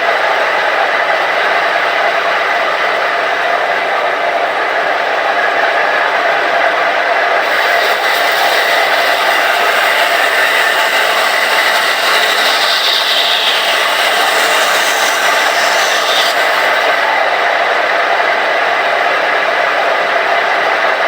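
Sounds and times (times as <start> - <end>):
power tool motor whir: 7.4 - 17.6.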